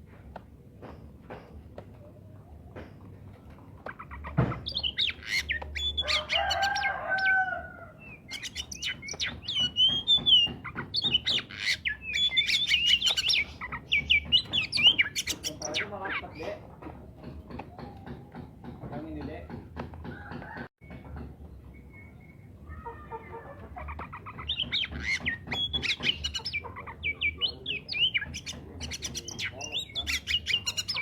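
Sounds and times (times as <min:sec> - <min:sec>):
bird singing chirps and whistles: 0:04.6 - 0:07.4, 0:08.0 - 0:16.1, 0:24.5 - 0:31.0.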